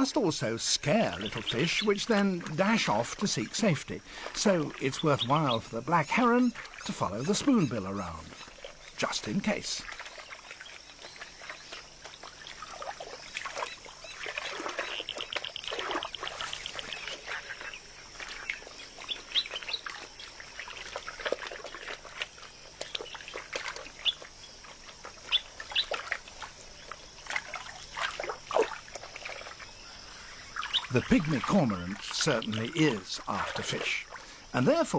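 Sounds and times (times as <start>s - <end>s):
faint trickle of water: 0.0s - 34.9s
wetland birds chirping and squawking: 0.0s - 34.9s
bird trill: 4.4s - 9.5s, 29.7s - 33.9s.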